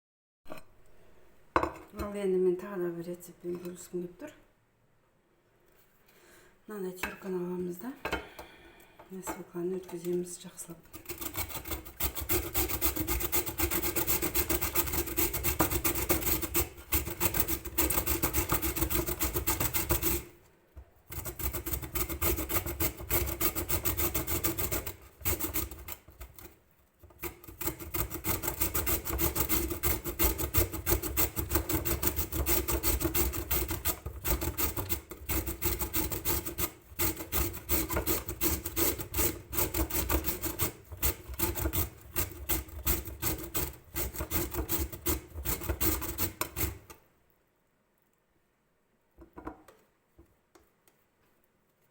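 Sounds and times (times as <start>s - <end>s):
beetroot grated on hand grater: 9.3s - 20.4s, 21.1s - 47.0s.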